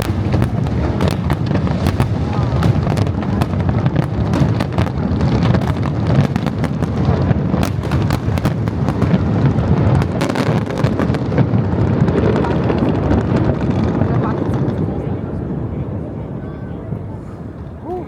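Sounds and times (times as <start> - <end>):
fireworks bangs and crackles: 0.0 - 18.0.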